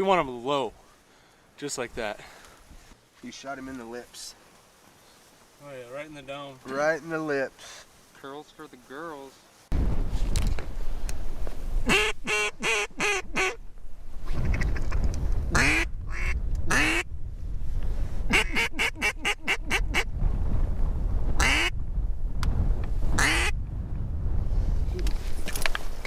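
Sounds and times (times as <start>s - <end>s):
wind rumbling on microphone: 9.7s - 26.0s
duck quacking: 11.9s - 13.6s, 15.5s - 17.0s, 18.3s - 20.1s, 21.4s - 21.7s, 23.2s - 23.5s.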